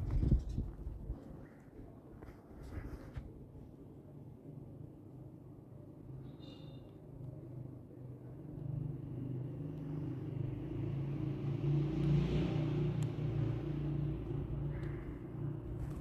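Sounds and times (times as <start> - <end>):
vehicle passing with tyre hiss: 8.8 - 16.0.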